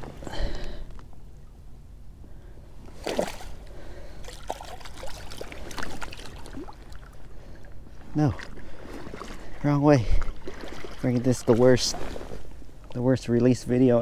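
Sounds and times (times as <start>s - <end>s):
shallow water splashing: 2.8s - 13.0s.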